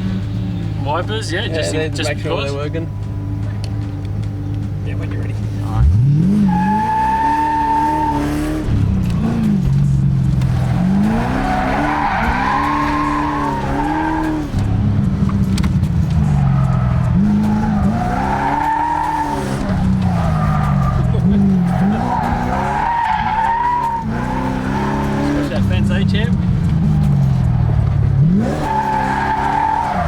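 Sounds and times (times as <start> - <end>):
car engine revving: 0.0 - 30.0
tyres squealing: 10.4 - 14.9, 16.1 - 25.8, 26.8 - 30.0.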